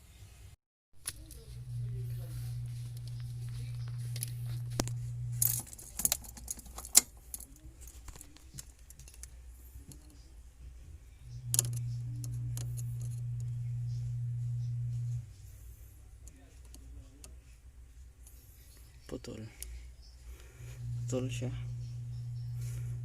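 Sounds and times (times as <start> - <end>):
steady low hum: 1.0 - 6.2, 9.2 - 23.0
small parts clicking and rattling: 4.0 - 10.2, 11.5 - 13.2.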